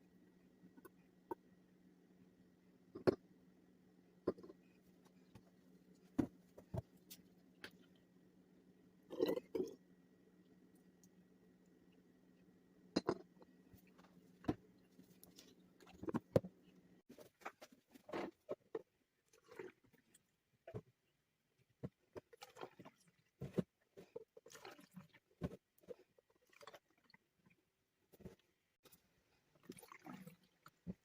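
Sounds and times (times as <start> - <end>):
low steady hum: 0.0 - 17.5.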